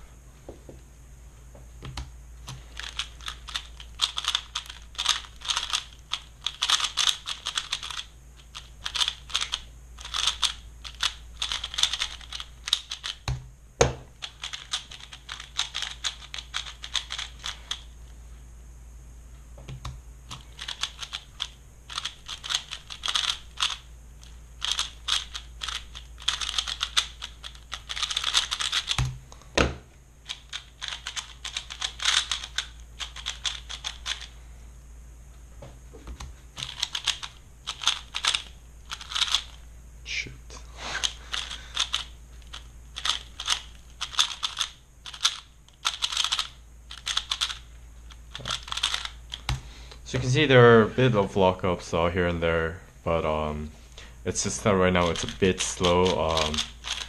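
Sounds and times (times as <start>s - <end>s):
puzzle cube turning clicks: 1.9s - 13.4s, 14.2s - 17.9s, 19.7s - 29.2s, 30.2s - 34.3s, 36.2s - 39.6s, 41.0s - 49.6s, 54.9s - 57.0s.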